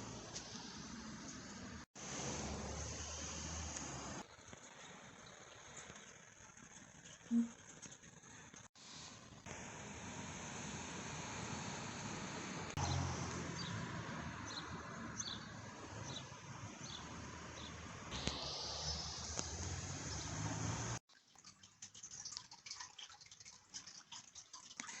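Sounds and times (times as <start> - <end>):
steady hiss: 0.0 - 6.1, 8.8 - 13.7, 18.1 - 21.0.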